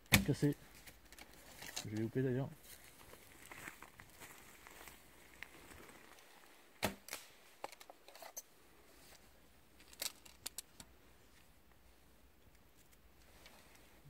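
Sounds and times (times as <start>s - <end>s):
bow shot thump: 6.8s - 7.3s.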